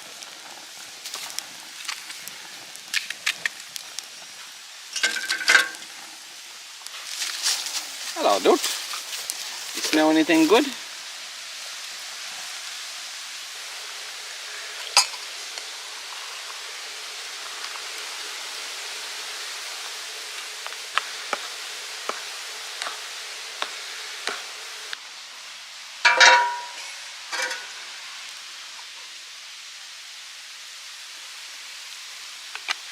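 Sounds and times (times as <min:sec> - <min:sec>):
wood fire ticking: 0:00.0 - 0:06.0, 0:06.8 - 0:10.8
food sizzling in a pan: 0:00.0 - 0:32.9
metal clatter and clink: 0:05.0 - 0:05.8, 0:26.1 - 0:27.7.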